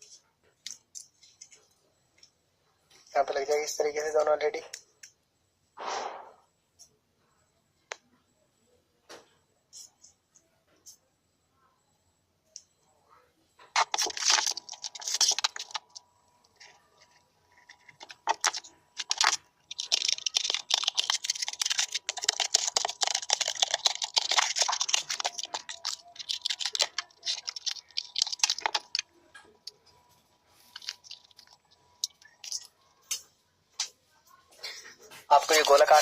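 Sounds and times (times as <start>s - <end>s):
dry scratching and crackling: 13.7s - 33.9s, 34.6s - 36.0s.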